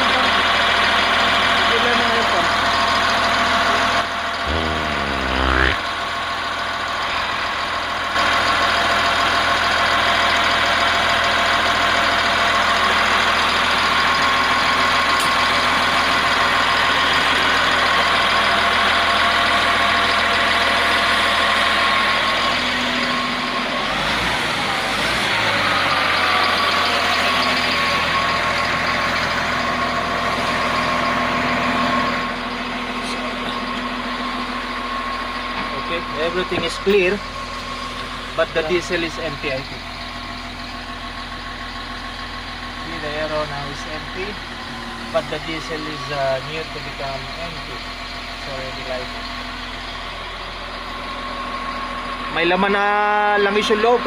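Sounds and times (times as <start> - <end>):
wheel loader diesel engine running: 6.8 - 45.4.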